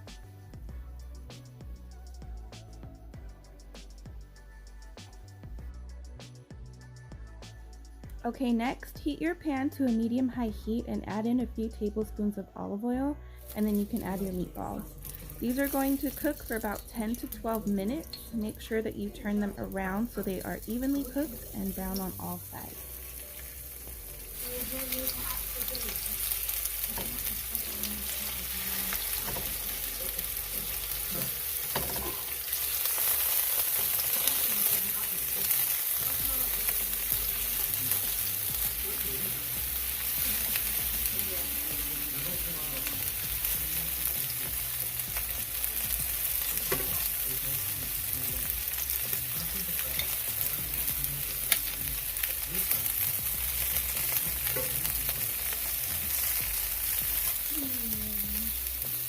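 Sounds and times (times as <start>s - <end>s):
meatballs sizzling in a pan: 13.4s - 59.0s.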